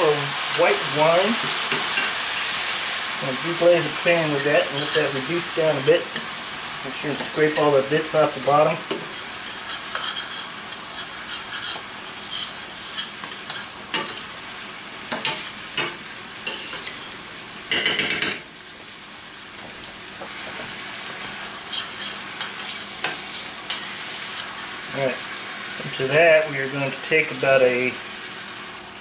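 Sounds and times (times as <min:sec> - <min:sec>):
wine sizzling in frying pan: 0:00.0 - 0:29.0
utensil scraping pan bottom: 0:03.5 - 0:06.0, 0:09.0 - 0:14.2, 0:21.1 - 0:24.9.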